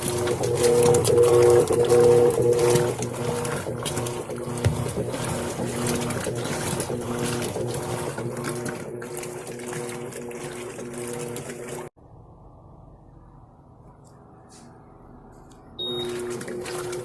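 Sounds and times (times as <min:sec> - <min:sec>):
washing machine water sloshing: 0:00.0 - 0:12.0, 0:15.8 - 0:17.0
washing machine motor hum: 0:00.0 - 0:17.0.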